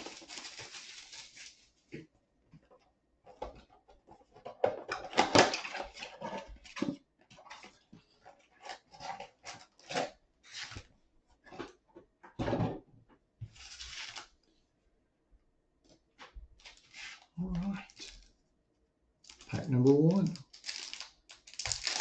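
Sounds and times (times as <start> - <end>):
plastic wrap crinkling and tearing: 0.0 - 1.8, 13.6 - 14.4, 16.6 - 18.3, 19.2 - 22.0.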